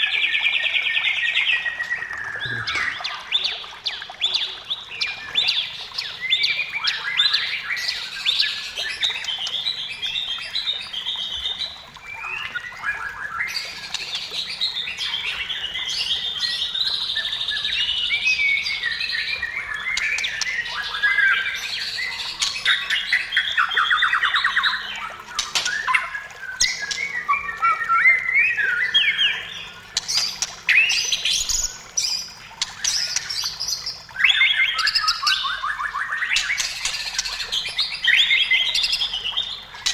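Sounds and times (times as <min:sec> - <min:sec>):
bird singing varied song: 0:00.0 - 0:39.9.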